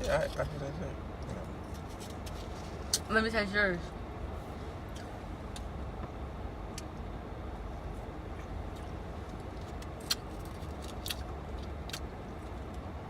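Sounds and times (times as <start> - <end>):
car idling from inside cabin: 0.0 - 1.6.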